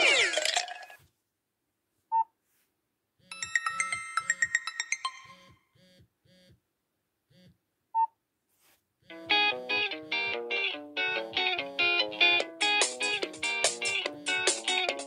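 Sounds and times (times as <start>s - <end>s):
electronic ringtone notes: 3.3s - 6.0s, 9.1s - 15.0s.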